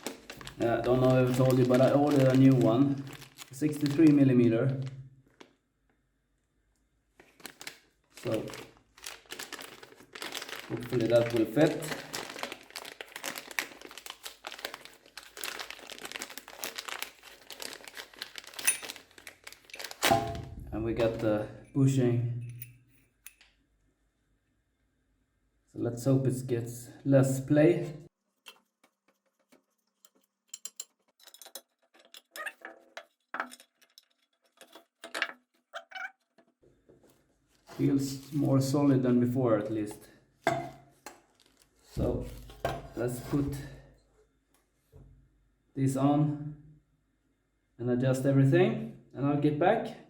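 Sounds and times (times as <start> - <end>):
plastic packaging crinkling: 0.0 - 5.6, 7.1 - 21.3, 37.1 - 39.0, 40.5 - 43.3.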